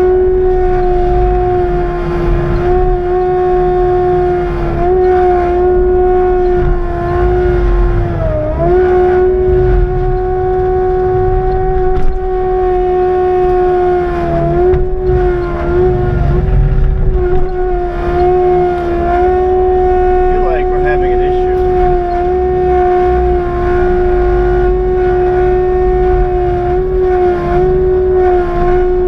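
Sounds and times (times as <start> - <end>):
engine low rumble: 0.0 - 29.0
forestry mulcher whining: 0.0 - 29.0.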